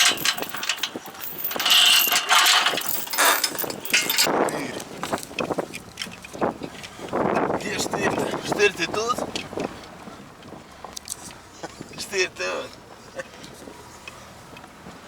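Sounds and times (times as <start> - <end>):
mechanical clattering and clicking: 0.0 - 4.3.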